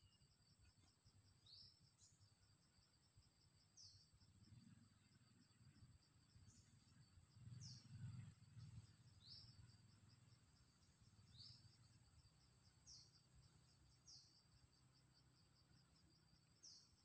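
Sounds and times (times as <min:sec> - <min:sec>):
bird chirping: 0:00.0 - 0:02.3, 0:04.9 - 0:09.9, 0:11.1 - 0:12.0, 0:12.8 - 0:14.5, 0:16.6 - 0:17.0.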